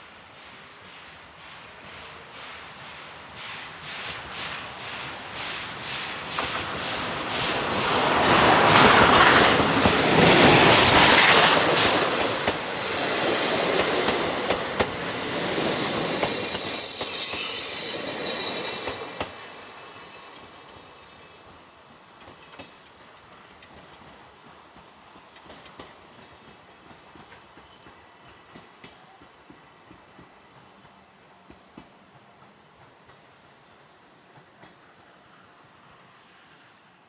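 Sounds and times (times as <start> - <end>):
steam train passing: 0.0 - 37.0
wheels squealing: 7.4 - 20.0.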